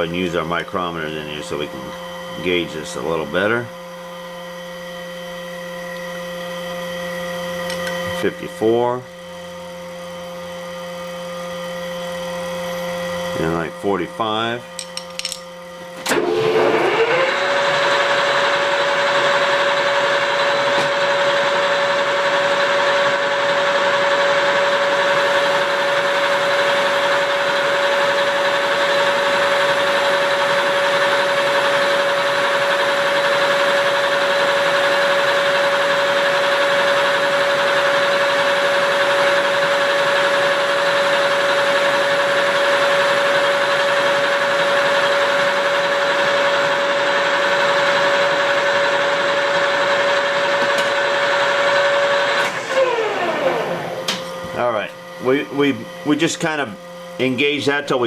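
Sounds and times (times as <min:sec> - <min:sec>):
metal lathe whining: 0:00.0 - 0:09.0, 0:11.7 - 0:57.8.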